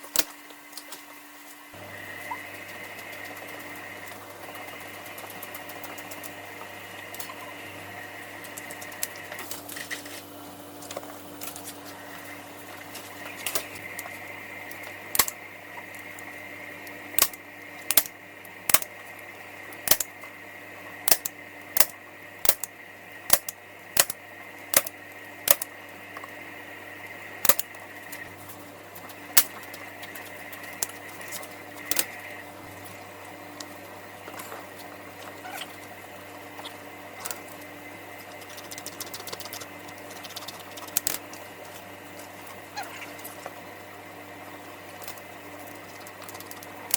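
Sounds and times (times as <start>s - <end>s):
steady hum: 0.0s - 46.9s
staple gun snaps: 23.3s - 24.2s.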